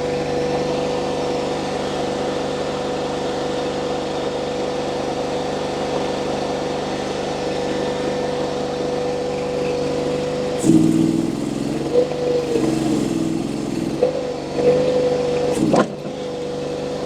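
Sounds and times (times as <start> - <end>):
skid steer loader engine: 0.0 - 17.0
steady high whine: 9.3 - 14.3.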